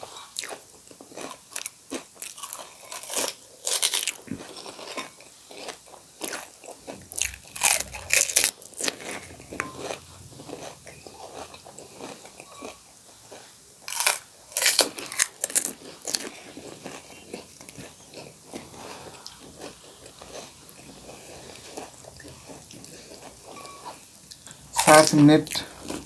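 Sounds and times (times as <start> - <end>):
crunching crisp shells: 0.5 - 8.7, 11.4 - 17.8.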